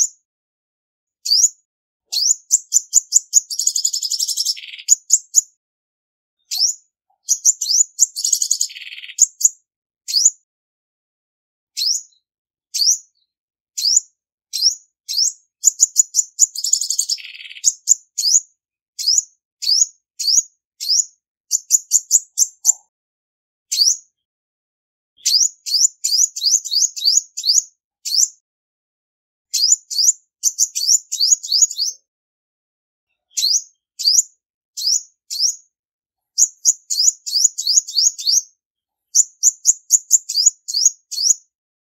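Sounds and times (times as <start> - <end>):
sunbird chirping: 2.1 - 5.5, 6.4 - 10.3, 13.8 - 18.4, 29.6 - 32.0, 33.3 - 34.2, 36.4 - 38.4.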